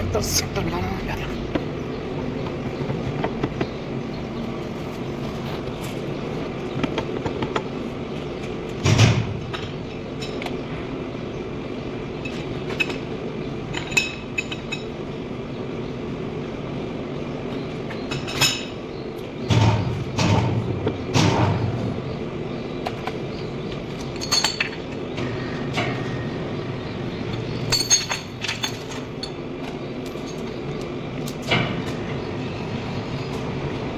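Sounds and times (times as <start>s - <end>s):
machinery hum: 0.0s - 33.9s
heavy steel parts clanking: 23.9s - 26.3s, 27.3s - 30.6s.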